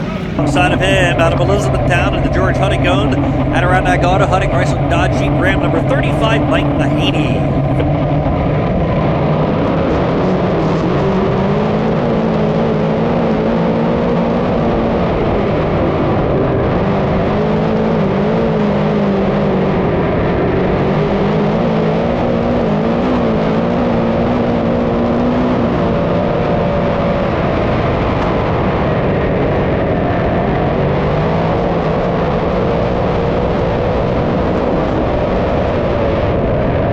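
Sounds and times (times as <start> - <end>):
race car engines running: 0.0 - 29.0.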